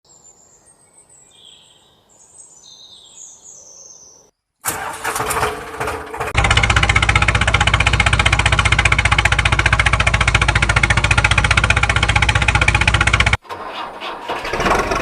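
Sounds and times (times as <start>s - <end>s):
birds chirping: 0.1s - 4.5s
engine starting and idling: 4.6s - 15.0s.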